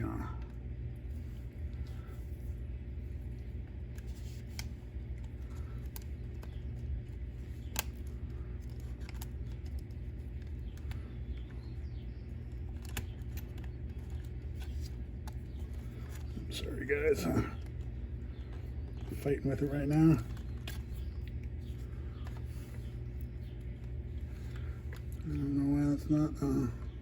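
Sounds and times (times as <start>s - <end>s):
low steady hum: 0.0s - 27.0s.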